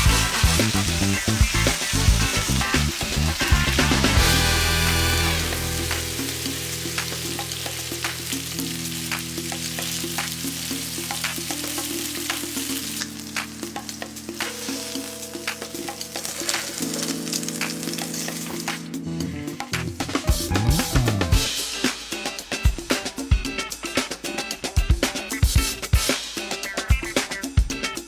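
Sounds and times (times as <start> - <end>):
stirring in a pan: 0.0 - 20.5
chicken sizzling in a pan: 0.0 - 28.0.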